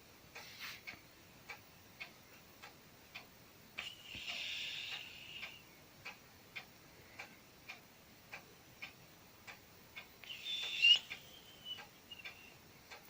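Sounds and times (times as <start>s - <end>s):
steady ticking: 0.3s - 13.0s
cat whistling through nose: 10.2s - 12.4s.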